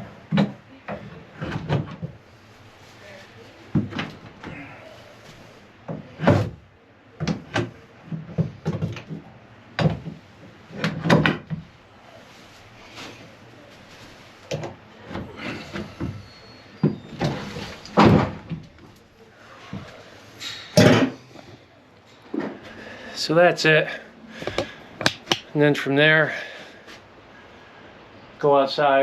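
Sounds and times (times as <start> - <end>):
wooden knocks and clunks of locks: 7.2 - 11.7.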